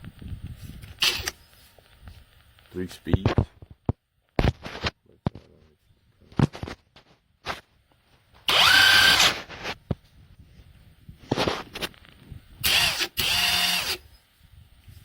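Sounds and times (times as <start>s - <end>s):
impact wrench motor whine: 0.9s - 1.4s, 8.4s - 9.7s, 12.6s - 14.2s.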